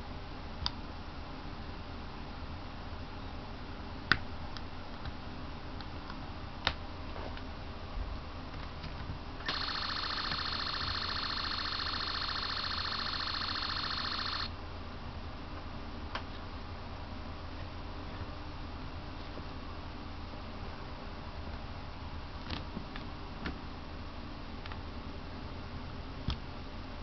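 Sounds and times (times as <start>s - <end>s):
electronic alarm ringing tone: 9.5s - 14.5s.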